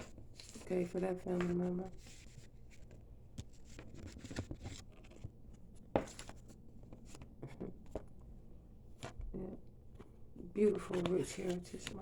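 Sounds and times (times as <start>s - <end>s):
cards rustling: 0.0s - 8.2s, 10.0s - 12.0s
cards tapping: 5.9s - 8.1s, 10.0s - 12.0s.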